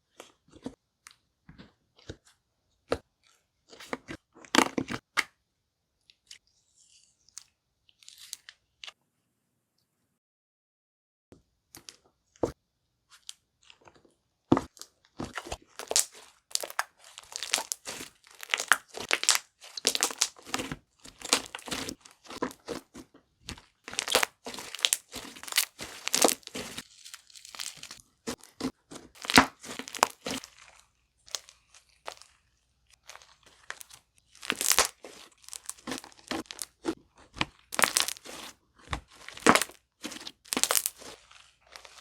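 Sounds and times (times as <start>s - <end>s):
slime squeezed by hand crackling: 15.4s - 22.4s, 23.8s - 28.4s, 29.2s - 32.4s, 33.0s - 36.9s, 37.7s - 38.5s, 39.1s - 42.0s.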